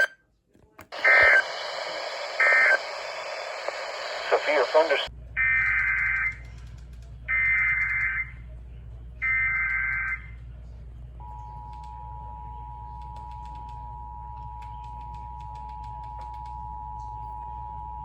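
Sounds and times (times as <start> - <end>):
warbling digital data bursts: 1.0 - 5.0
low hum: 1.0 - 18.0.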